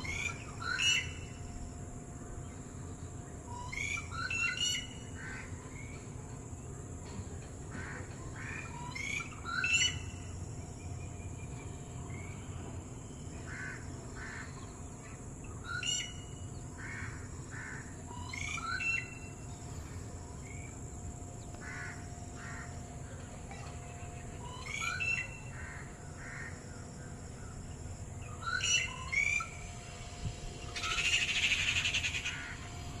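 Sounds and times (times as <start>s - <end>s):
bird chirping phrases: 17.4s - 33.0s
harsh rasping bird call: 30.7s - 32.8s.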